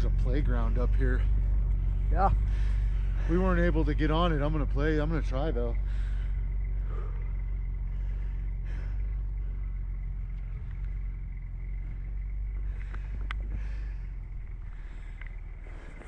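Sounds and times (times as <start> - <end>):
truck engine low rumble: 0.0 - 16.0
faint clicks: 11.9 - 14.2, 14.9 - 16.0.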